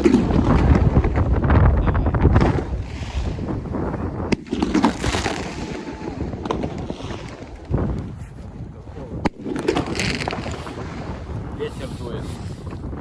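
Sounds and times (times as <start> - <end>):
wind buffeting microphone: 0.0 - 13.0
sharp cracks: 4.2 - 7.8, 9.2 - 10.8.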